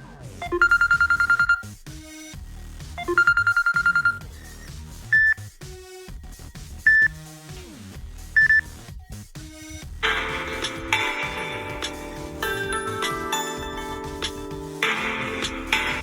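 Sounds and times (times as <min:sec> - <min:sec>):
electronic ringtone tune: 0:00.4 - 0:01.7, 0:03.0 - 0:04.3, 0:05.1 - 0:05.4, 0:06.9 - 0:07.1, 0:10.0 - 0:16.0.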